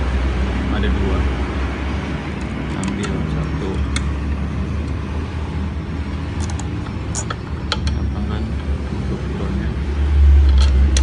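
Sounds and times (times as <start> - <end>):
low vehicle rumble: 0.0 - 11.0.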